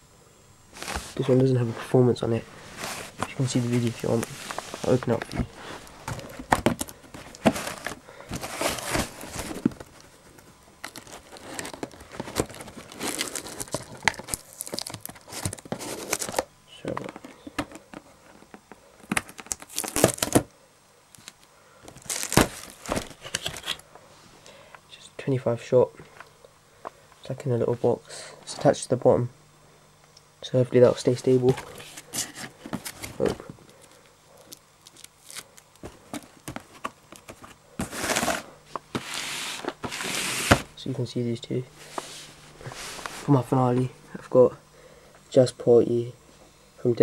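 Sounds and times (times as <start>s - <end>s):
packaging rustling: 0.7s - 20.5s, 21.2s - 23.8s, 31.4s - 40.8s, 41.7s - 43.5s
wrapping crinkling and tearing: 2.4s - 16.5s, 19.0s - 20.5s, 21.1s - 23.8s, 31.5s - 40.8s.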